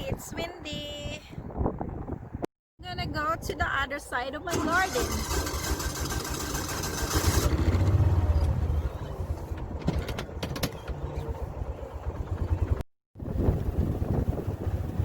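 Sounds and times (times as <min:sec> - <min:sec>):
wind buffeting microphone: 0:00.0 - 0:04.2, 0:10.7 - 0:15.0.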